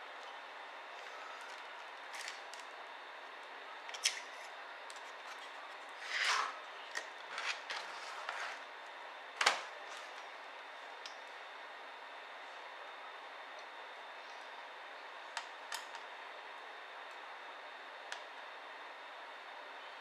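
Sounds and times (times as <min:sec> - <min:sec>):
short scraping sounds: 0:06.0 - 0:06.6.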